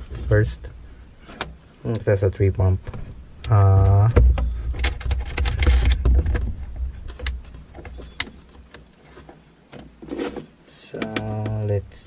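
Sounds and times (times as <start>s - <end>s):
light clicks and knocks: 2.8s - 11.8s.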